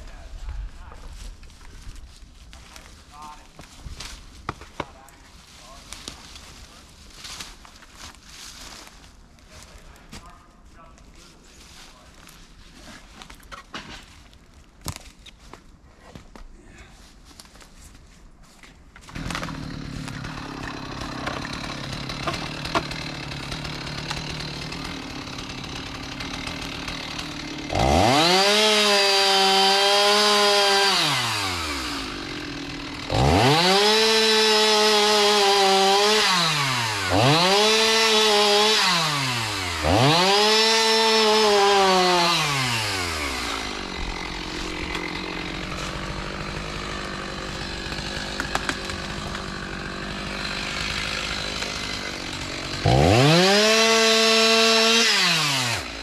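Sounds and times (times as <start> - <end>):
chainsaw idling and revving: 19.1 - 56.0.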